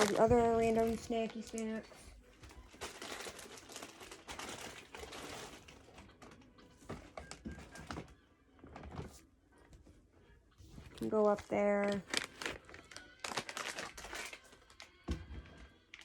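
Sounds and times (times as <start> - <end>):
packages clicking and tapping: 0.0 - 1.8, 2.4 - 9.2, 11.8 - 16.0
plastic snack bags crinkling: 0.0 - 1.8, 2.4 - 8.1, 10.8 - 16.0.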